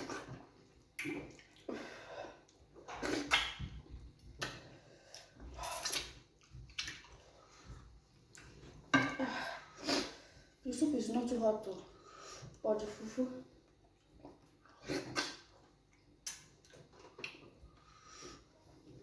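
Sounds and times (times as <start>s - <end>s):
wet eating smacks and slurps: 0.0s - 1.8s, 2.4s - 7.6s, 13.8s - 17.8s.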